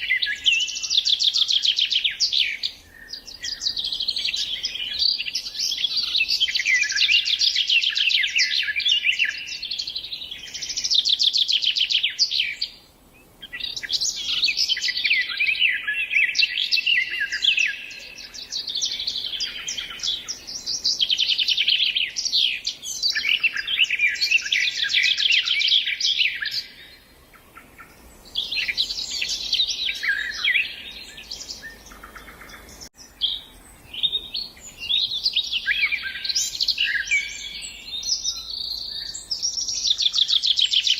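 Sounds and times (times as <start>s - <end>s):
songbirds trilling and chirping: 0.0s - 40.9s.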